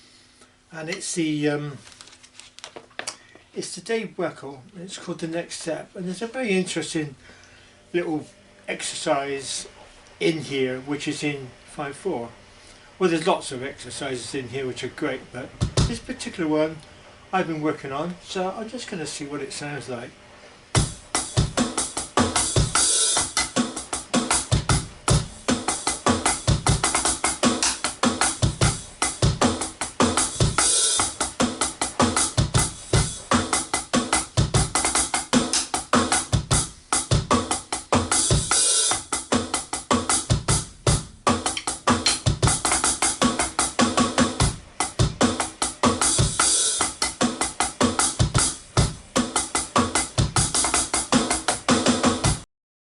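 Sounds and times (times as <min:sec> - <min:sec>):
drum kit groove: 0:15.3 - 0:16.8, 0:20.7 - 0:52.5.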